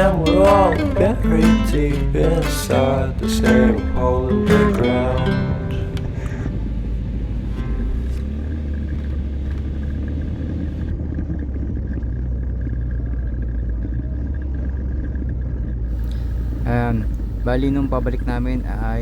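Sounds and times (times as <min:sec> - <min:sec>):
atv engine rumble: 0:00.0 - 0:11.0, 0:15.9 - 0:19.0.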